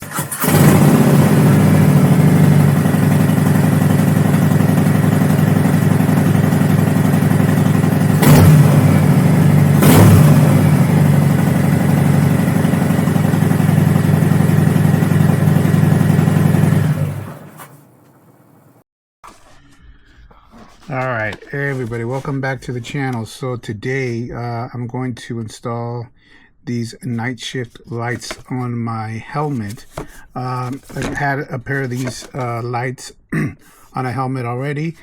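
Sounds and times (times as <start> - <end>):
motorcycle engine running: 0.1 - 17.5.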